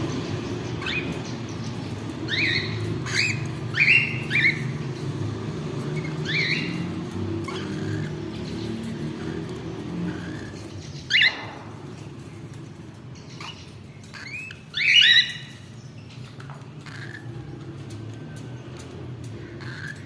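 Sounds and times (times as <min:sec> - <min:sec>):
low background hum: 0:00.0 - 0:20.0
baby cockatiels squawking: 0:00.8 - 0:01.2, 0:02.3 - 0:04.8, 0:05.9 - 0:11.6, 0:13.4 - 0:15.7, 0:16.8 - 0:17.3, 0:19.4 - 0:20.0.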